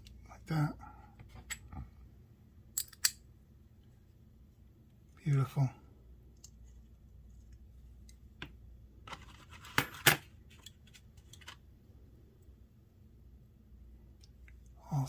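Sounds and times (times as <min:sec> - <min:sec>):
small metal parts clicking: 0:02.8 - 0:03.2.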